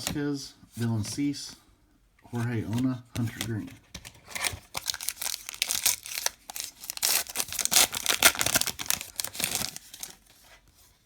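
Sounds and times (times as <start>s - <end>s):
plastic wrapper tearing and crackling: 4.3s - 10.2s.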